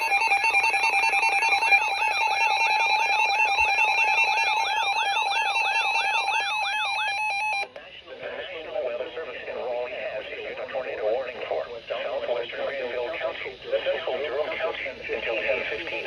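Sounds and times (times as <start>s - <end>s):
two steady alert tones: 0.0s - 7.7s.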